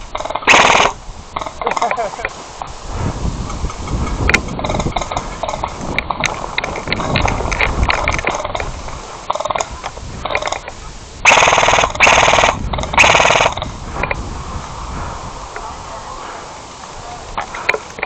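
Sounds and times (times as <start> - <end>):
rustle of movement: 0.0 - 18.0
airsoft gun firing bursts: 0.4 - 1.5, 11.3 - 13.6.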